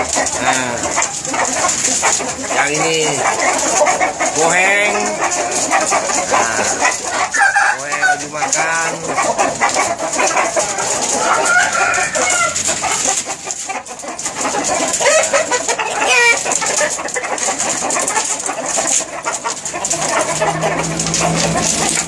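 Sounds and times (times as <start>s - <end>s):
chickens clucking: 0.0s - 22.0s.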